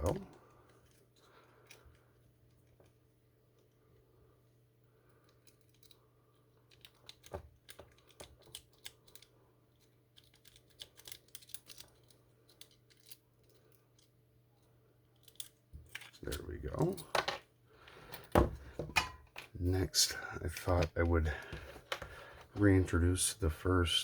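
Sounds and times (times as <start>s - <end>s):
low steady hum: 0.0s - 24.0s
paper clip raking padlock pins: 5.3s - 14.1s, 15.2s - 17.2s.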